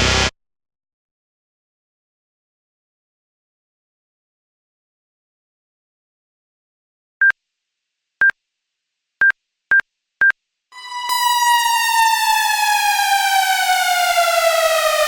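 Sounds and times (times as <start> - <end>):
buzzy synthesized falling tone: 10.8 - 15.0.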